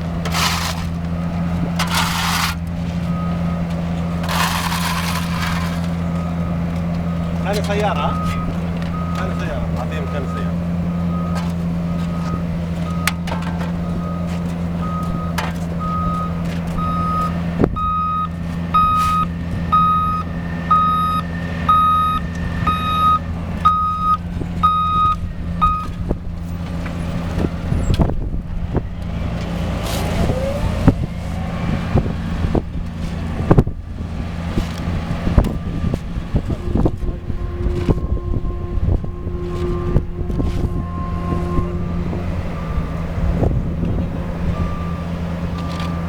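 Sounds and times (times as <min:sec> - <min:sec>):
heavy diesel machinery running: 0:00.0 - 0:46.0
reversing alarm beeping: 0:00.5 - 0:26.1, 0:35.5 - 0:43.5, 0:44.4 - 0:46.0
knocks and clanks: 0:11.3 - 0:15.8.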